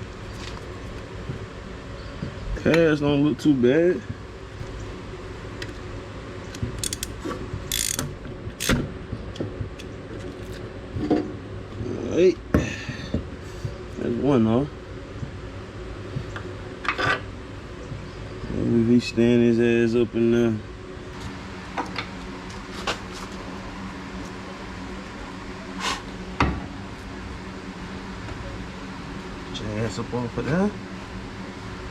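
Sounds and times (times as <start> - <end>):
steady low hum: 0.0 - 31.9
ratchet wrench clicking: 6.8 - 8.8.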